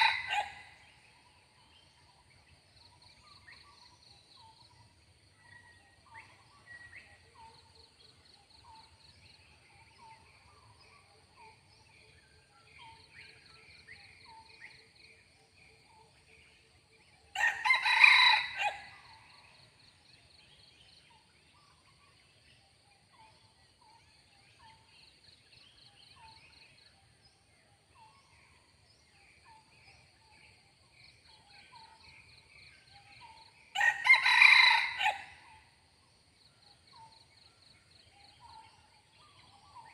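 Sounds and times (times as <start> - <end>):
rooster crowing: 0.0 - 0.6, 17.4 - 18.9, 33.8 - 35.4
faint bird chirps: 18.1 - 33.9.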